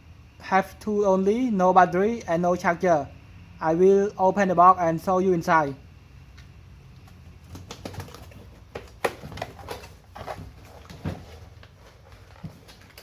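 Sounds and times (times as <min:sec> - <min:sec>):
packaging rustling and clicks: 0:07.0 - 0:13.0.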